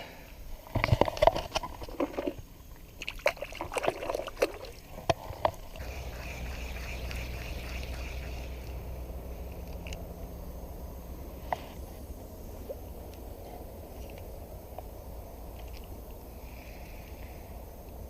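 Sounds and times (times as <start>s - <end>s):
water splashing: 1.0s - 9.9s
steady low rumble: 5.7s - 18.0s.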